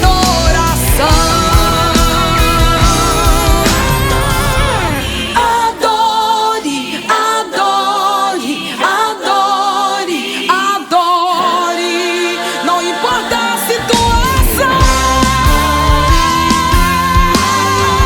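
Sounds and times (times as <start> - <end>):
bass and drums: 0.0 - 5.5, 13.8 - 18.0
choir singing gospel song: 0.0 - 18.0.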